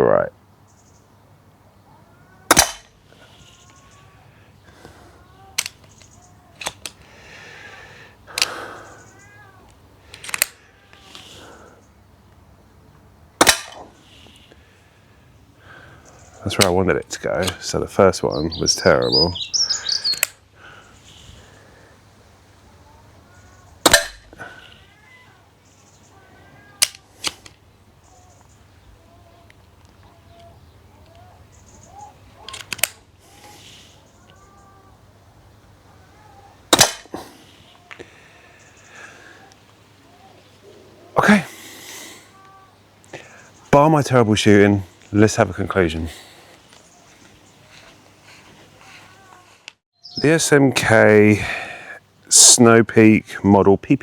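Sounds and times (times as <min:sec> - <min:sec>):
air pistol lever clicks: 0:02.5 - 0:03.0, 0:05.5 - 0:07.1, 0:08.3 - 0:08.6, 0:09.7 - 0:11.2, 0:13.4 - 0:13.9, 0:20.0 - 0:20.4, 0:23.8 - 0:24.3, 0:26.8 - 0:27.6, 0:32.4 - 0:33.0, 0:36.7 - 0:37.1
air pistol shot: 0:02.5 - 0:03.0, 0:13.4 - 0:13.9, 0:23.8 - 0:24.3, 0:36.7 - 0:37.2
sharp clicks: 0:02.5 - 0:03.0, 0:08.3 - 0:11.2, 0:19.5 - 0:20.4, 0:26.8 - 0:27.6, 0:32.4 - 0:33.0.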